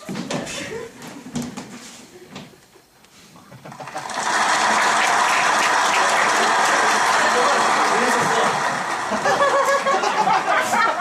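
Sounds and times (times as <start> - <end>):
audience applause: 3.7 - 11.0.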